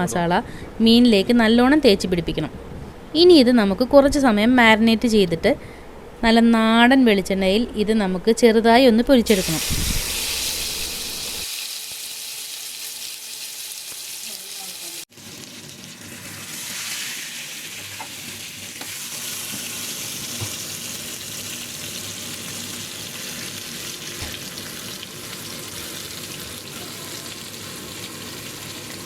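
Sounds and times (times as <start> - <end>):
fish sizzling in oil: 9.3 - 29.0.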